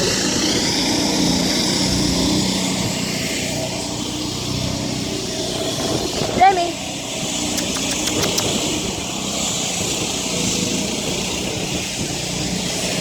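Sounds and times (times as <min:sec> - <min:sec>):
passing traffic: 0:00.0 - 0:13.0
street works noise: 0:00.0 - 0:13.0
sharp taps: 0:07.6 - 0:08.6.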